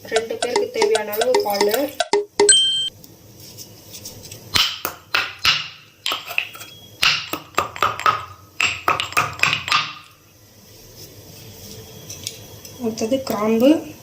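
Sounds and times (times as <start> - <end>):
pestle pounding spices: 4.6 - 10.1.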